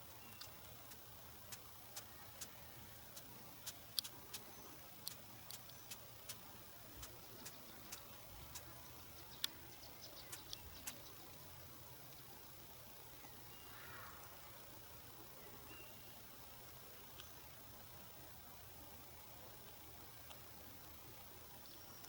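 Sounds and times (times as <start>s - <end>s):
rabbit nibbling clicks: 0.0s - 11.2s.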